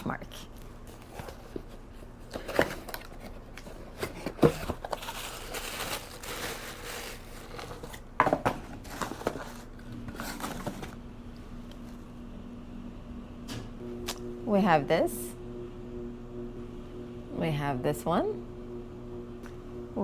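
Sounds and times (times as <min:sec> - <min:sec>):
packaging crinkling and tearing: 0:02.3 - 0:08.1.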